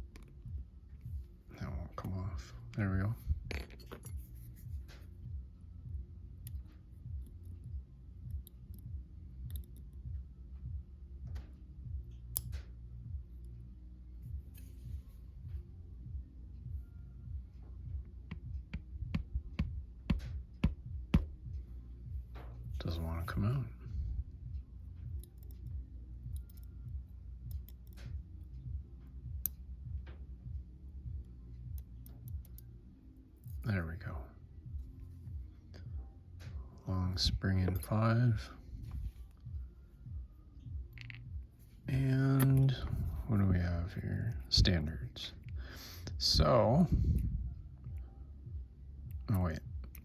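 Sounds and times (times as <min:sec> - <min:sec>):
low rhythmic thumping: 0:00.0 - 0:50.0
muffled bass beat of music: 0:00.0 - 0:50.0
tools clicking on padlock pins: 0:08.2 - 0:10.0, 0:25.0 - 0:28.1.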